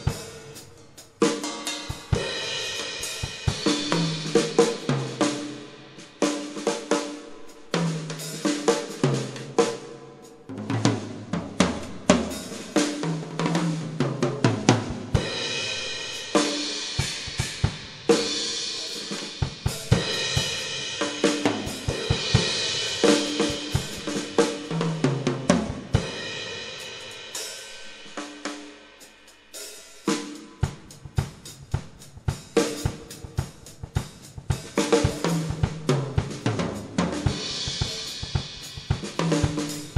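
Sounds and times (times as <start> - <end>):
drum kit playing: 0.0 - 39.9
crash cymbals ringing: 15.3 - 17.4.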